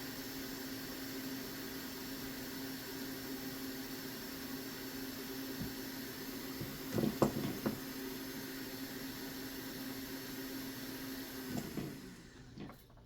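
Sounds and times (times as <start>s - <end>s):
fan hum and hiss: 0.0s - 13.0s
knock: 6.6s - 7.8s.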